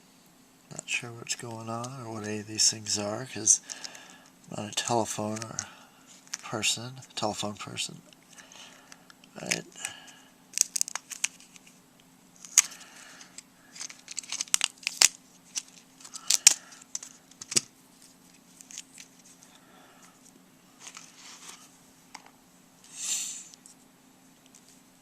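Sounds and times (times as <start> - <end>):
faint steady hum: 0.0 - 25.0
plastic parts clicking and scraping: 3.6 - 4.0, 4.8 - 6.5, 10.5 - 11.8, 12.4 - 17.7.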